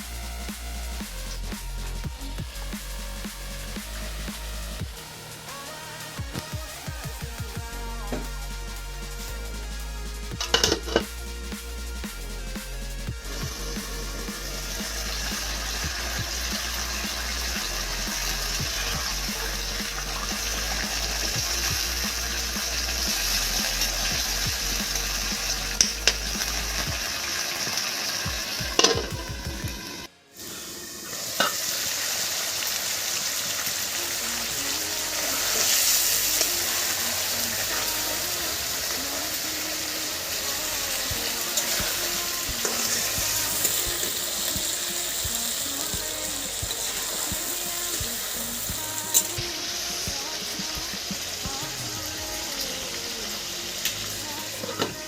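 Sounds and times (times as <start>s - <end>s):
food sizzling in a pan: 26.4s - 29.1s, 29.8s - 55.0s.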